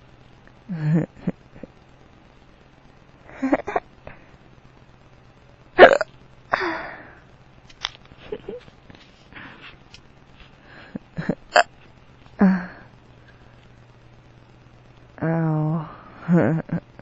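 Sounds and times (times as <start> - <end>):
man hiccuping: 5.8 - 6.1.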